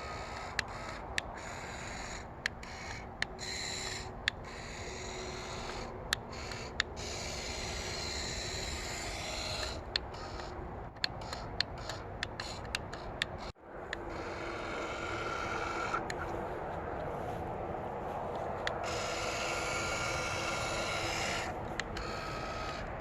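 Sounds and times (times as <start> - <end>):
electric motors whirring: 0.0 - 17.1, 18.6 - 23.0
sharp clicks: 8.9 - 14.3.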